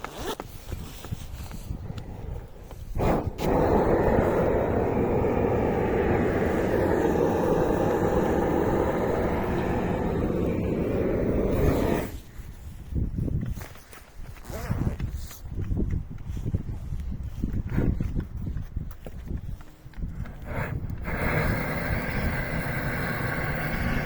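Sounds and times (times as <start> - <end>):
roofing torch flame rushing: 0.6 - 13.2, 20.1 - 24.0.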